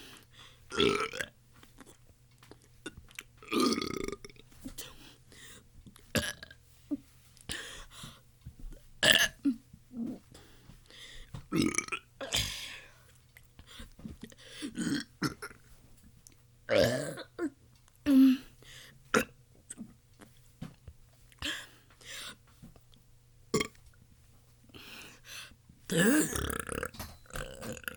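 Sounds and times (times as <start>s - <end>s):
person burping: 0.7s - 1.3s, 2.8s - 4.4s, 6.2s - 6.6s, 9.0s - 10.2s, 11.5s - 12.7s, 14.6s - 15.6s, 16.7s - 18.4s, 19.2s - 19.9s, 23.6s - 23.8s, 25.9s - 27.9s.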